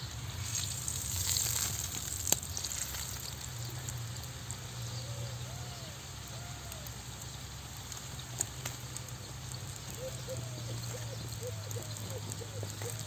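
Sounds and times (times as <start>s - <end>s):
flatbread sizzling on griddle: 0.0s - 13.0s.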